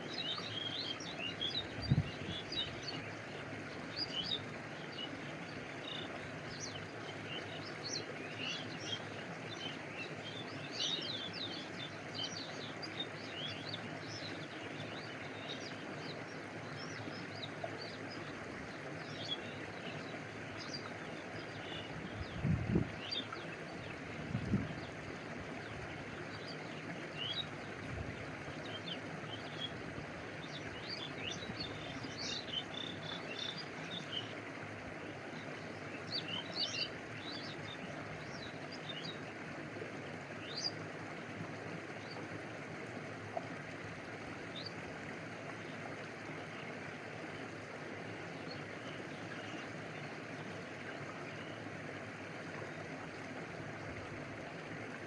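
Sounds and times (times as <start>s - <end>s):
small stream flowing: 0.0s - 55.0s
birds chirping: 28.6s - 34.3s.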